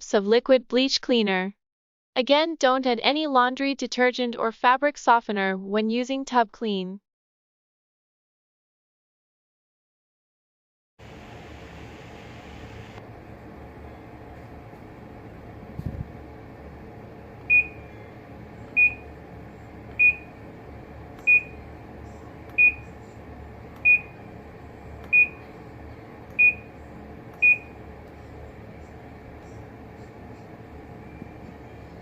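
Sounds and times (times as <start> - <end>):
faint steady hum: 11.0 - 32.0
washing machine high beeps: 17.4 - 19.3, 19.9 - 20.5, 21.2 - 23.1, 23.7 - 24.4, 25.0 - 25.7, 26.3 - 27.9, 30.9 - 32.0.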